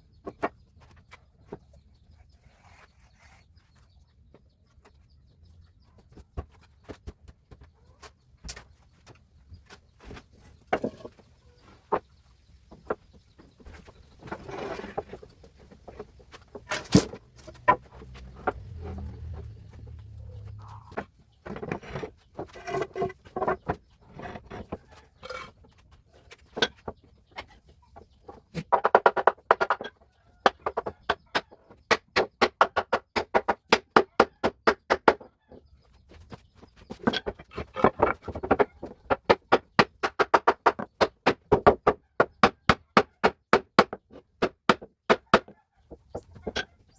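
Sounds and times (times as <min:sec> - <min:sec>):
hammer knocking wedges: 0:16.6 - 0:22.9.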